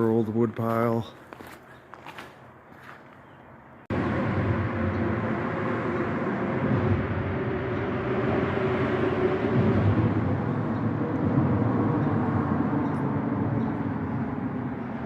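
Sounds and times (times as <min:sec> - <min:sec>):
vehicle rumble and hiss: 0:03.9 - 0:15.0.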